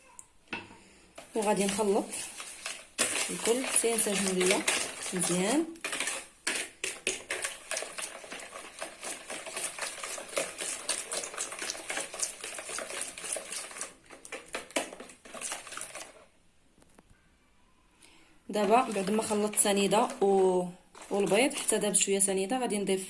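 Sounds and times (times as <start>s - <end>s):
whisk clattering against bowl: 1.2s - 16.3s, 18.6s - 22.1s.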